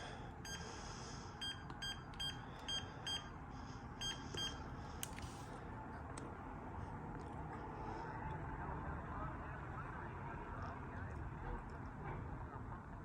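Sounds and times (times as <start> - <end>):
phone keypad beeps: 1.4 - 3.3, 4.0 - 4.6.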